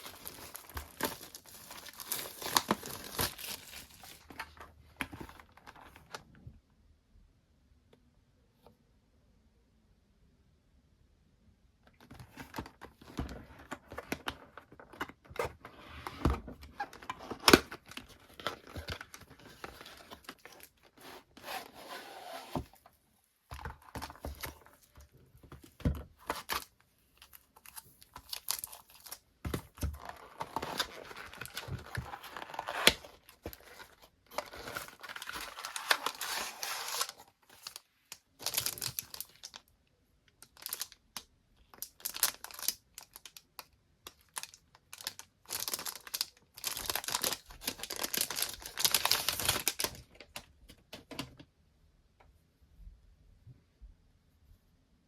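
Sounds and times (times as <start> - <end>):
paper and plastic tearing: 29.9 - 37.8.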